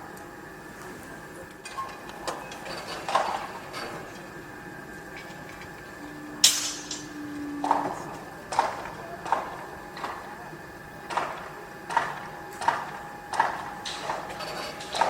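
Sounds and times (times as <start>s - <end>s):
brief low hum: 5.8s - 9.3s
loud metallic clank: 6.4s - 7.2s.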